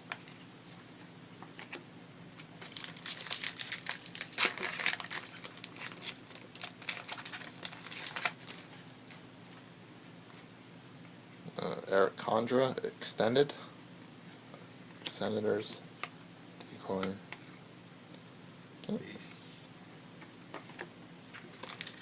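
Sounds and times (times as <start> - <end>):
foil wrapper crinkling: 2.4 - 8.8, 21.5 - 22.0.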